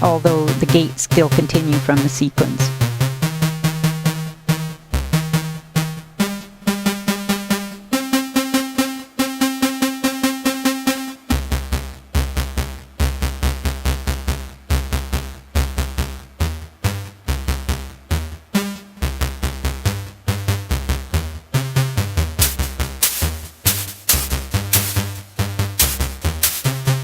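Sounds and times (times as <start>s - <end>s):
drum machine percussion: 22.4s - 27.0s
synthesizer bass sequence: 22.4s - 27.0s.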